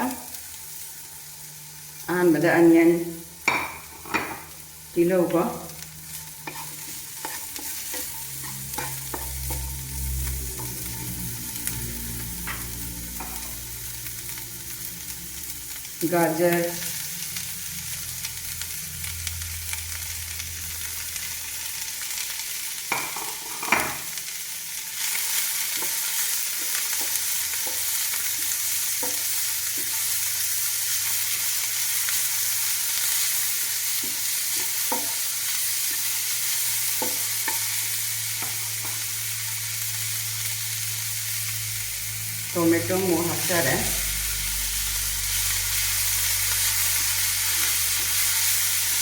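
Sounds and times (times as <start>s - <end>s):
vegetables sizzling in butter: 0.0s - 49.0s.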